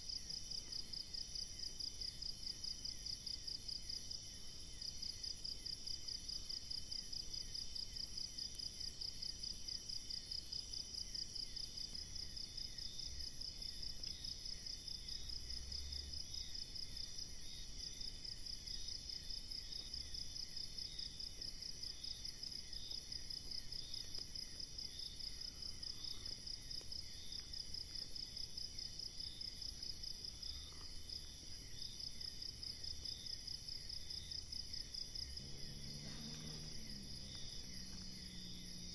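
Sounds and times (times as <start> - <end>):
insects trilling: 11.6 - 38.9.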